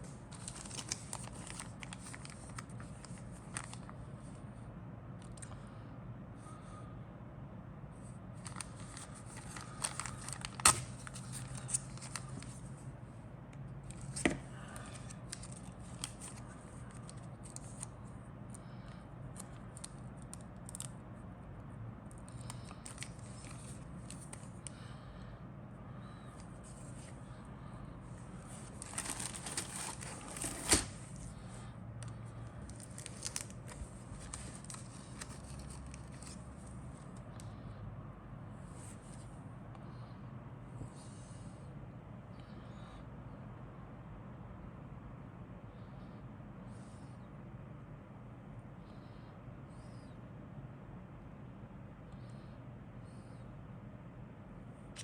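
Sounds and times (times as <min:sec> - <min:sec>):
plastic bags crinkling: 0:00.3 - 0:03.8, 0:08.4 - 0:12.6, 0:28.5 - 0:31.2, 0:32.7 - 0:36.4.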